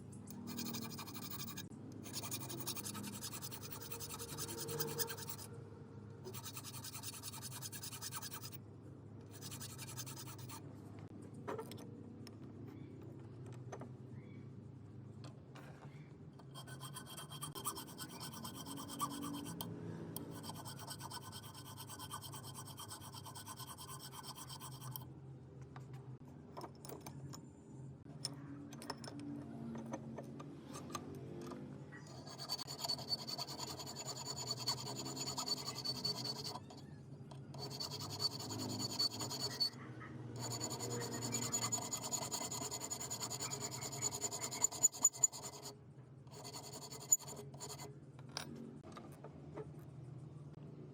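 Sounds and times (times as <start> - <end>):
scratching and rubbing on metal parts: 0.3 - 5.5, 6.2 - 8.6, 9.3 - 10.6, 15.6 - 25.0, 30.6 - 45.7, 46.3 - 48.9.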